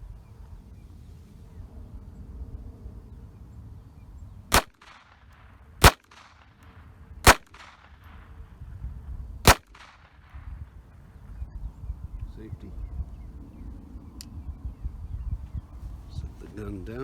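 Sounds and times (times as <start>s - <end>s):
pistol shots with echo: 4.5s - 8.4s, 9.4s - 10.5s.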